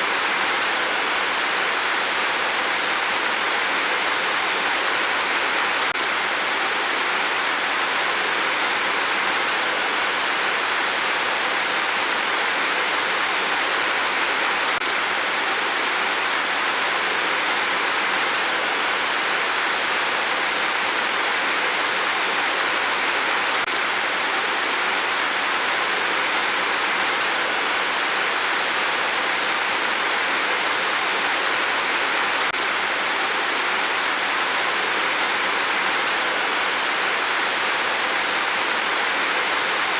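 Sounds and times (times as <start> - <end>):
rain falling steadily: 0.0 - 39.9.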